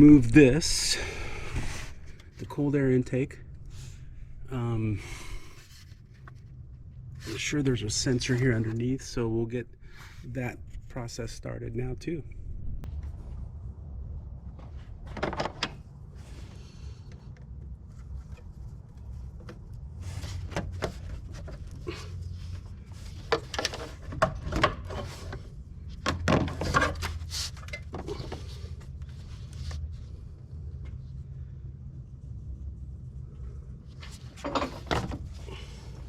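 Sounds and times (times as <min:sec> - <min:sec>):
steady low rumble: 0:00.0 - 0:23.3, 0:27.0 - 0:36.0.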